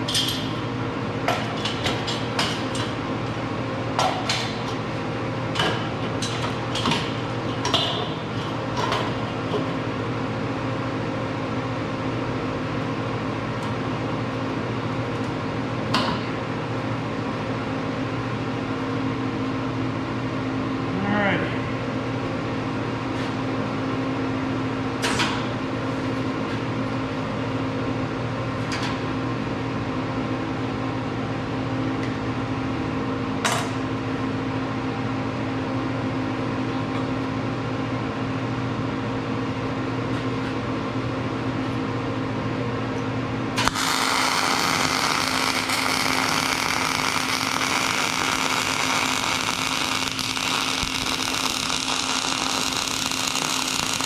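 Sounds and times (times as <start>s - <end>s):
welding machine humming: 0.0s - 10.0s, 43.5s - 54.0s
welding arc crackle: 43.6s - 54.0s.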